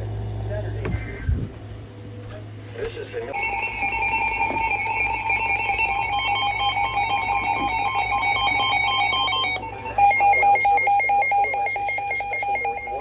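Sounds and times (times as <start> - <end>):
electronic warbling alert tones: 3.4 - 13.0.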